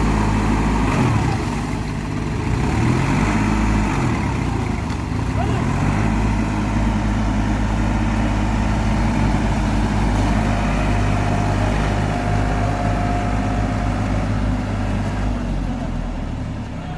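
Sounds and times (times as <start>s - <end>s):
tractor engine running: 0.0s - 16.9s.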